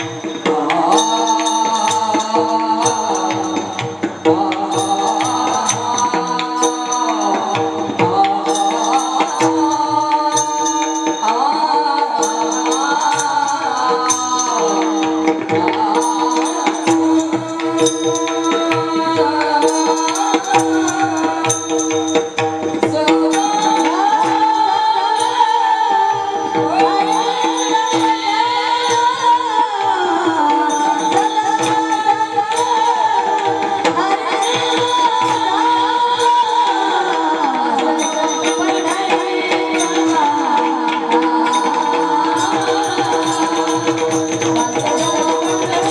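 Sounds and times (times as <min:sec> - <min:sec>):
devotional singing: 0:00.0 - 0:45.9
jingling percussion: 0:00.0 - 0:45.9
hand drum beat: 0:36.9 - 0:45.9.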